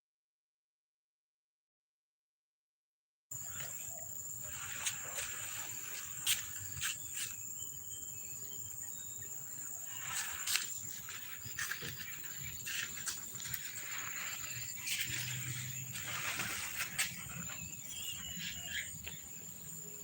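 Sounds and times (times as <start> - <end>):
insects droning: 3.3 - 20.0
light rustling: 9.9 - 19.2.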